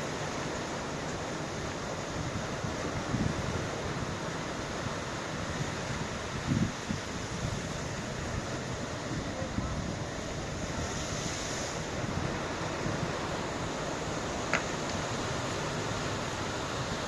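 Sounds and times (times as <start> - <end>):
ocean surf washing: 0.0 - 17.0
wind buffeting microphone: 5.5 - 13.7.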